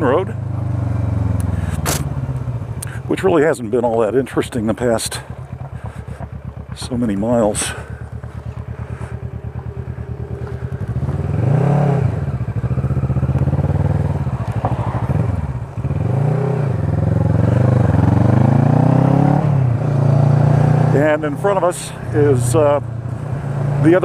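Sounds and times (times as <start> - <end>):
motorcycle engine accelerating: 0.0 - 24.0.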